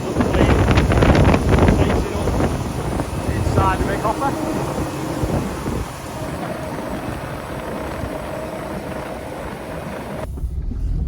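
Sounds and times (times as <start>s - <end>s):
harvester running: 0.0s - 10.7s
low vehicle rumble: 0.0s - 11.0s
wind buffeting microphone: 0.0s - 11.0s.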